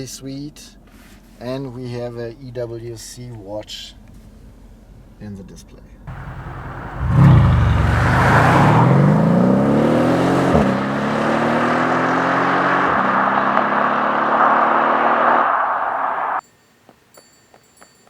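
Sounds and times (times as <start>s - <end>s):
car engine accelerating: 6.1s - 16.4s.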